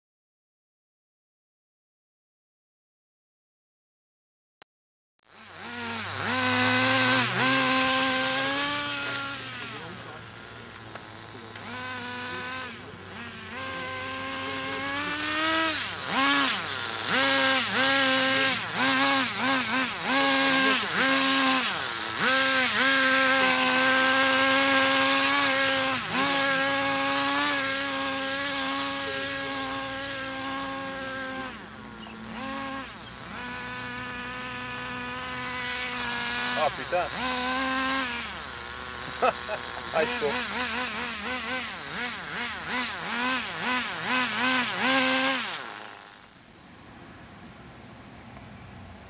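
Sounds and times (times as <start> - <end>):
small engine revving: 5.2 - 49.0.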